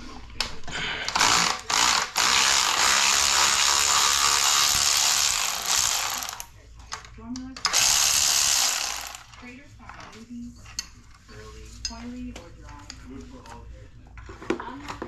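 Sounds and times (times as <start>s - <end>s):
ratchet wrench ratcheting: 1.2s - 6.5s, 7.7s - 9.4s.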